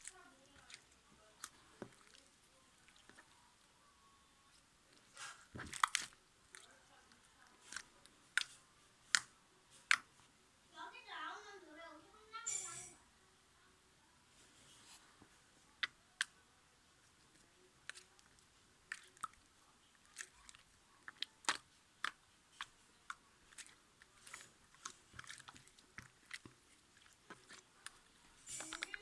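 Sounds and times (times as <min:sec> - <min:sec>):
slime squished by hand: 0:05.1 - 0:06.7, 0:17.3 - 0:19.4, 0:20.0 - 0:29.0.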